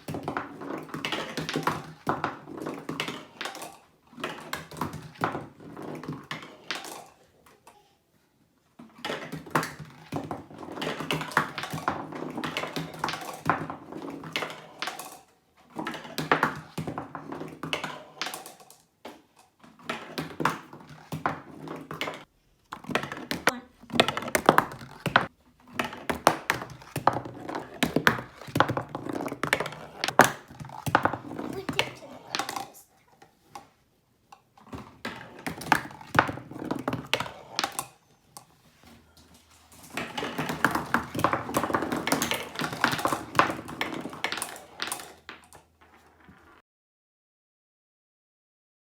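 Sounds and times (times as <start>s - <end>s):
marbles rolling down track: 0.0s - 7.2s, 9.0s - 32.9s, 35.0s - 38.0s, 39.7s - 46.6s
marbles clicking and knocking: 9.0s - 32.9s, 34.4s - 38.5s, 39.8s - 46.5s.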